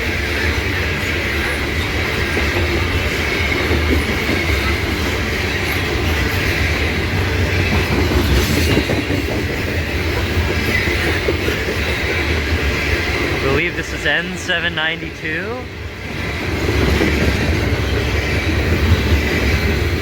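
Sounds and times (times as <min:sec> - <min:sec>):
freight train wheels rumbling on rails: 0:00.0 - 0:20.0
wheels clickety-clack: 0:00.0 - 0:20.0
faint high wheel squeal: 0:00.1 - 0:13.6.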